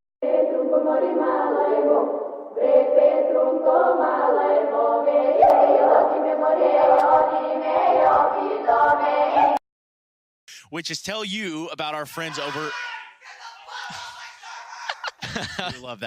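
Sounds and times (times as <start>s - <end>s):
choir singing held chords: 0.2s - 9.6s.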